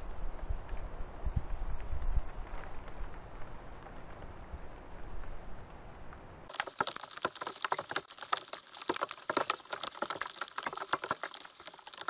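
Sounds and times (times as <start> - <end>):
low wind rumble: 0.0 - 6.5
wet snow and drops pattering: 6.5 - 12.0.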